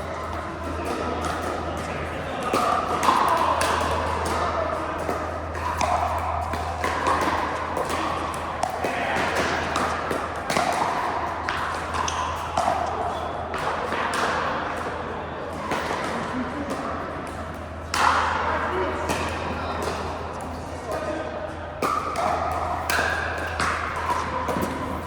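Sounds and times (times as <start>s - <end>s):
paddles hitting plastic ball: 0.3s - 13.0s, 21.8s - 25.0s.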